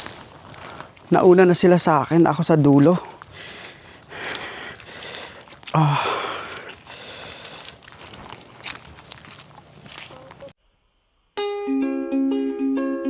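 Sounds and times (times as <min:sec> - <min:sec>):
person breathing hard: 0:03.0 - 0:07.8
person grunting: 0:05.7 - 0:06.5.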